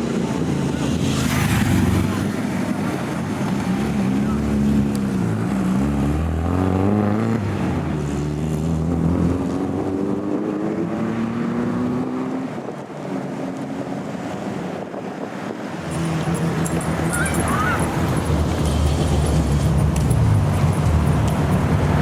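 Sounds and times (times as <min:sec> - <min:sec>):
wind and road noise: 0:00.0 - 0:22.0
car engine under load: 0:14.8 - 0:22.0.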